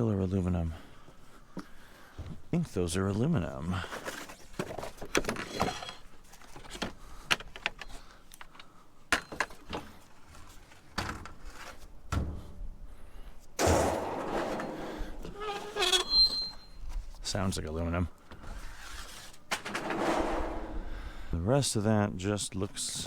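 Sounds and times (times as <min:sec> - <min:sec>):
scrap metal clanking: 0:13.6 - 0:16.7, 0:19.0 - 0:21.3
scraping rustle: 0:13.6 - 0:17.3, 0:18.4 - 0:21.2.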